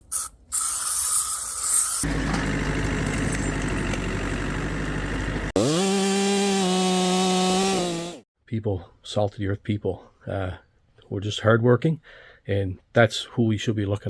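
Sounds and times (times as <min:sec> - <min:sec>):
engine running at low pitch: 0:02.0 - 0:05.6
chainsaw revving at full throttle: 0:02.0 - 0:08.2.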